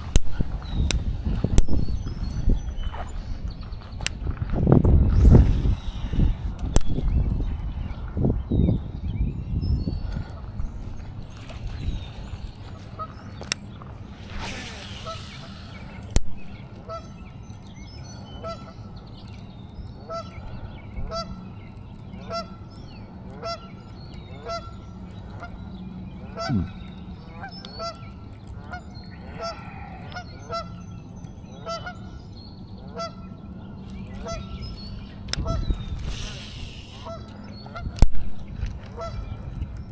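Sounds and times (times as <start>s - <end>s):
steady low hum: 0.0s - 18.9s
geese honking: 28.6s - 30.8s.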